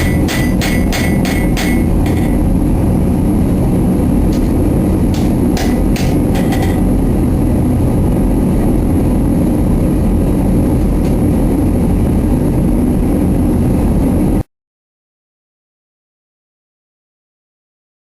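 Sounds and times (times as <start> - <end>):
hammer striking metal: 0.0 - 2.5, 4.3 - 7.0
loud low rumble: 0.0 - 14.5.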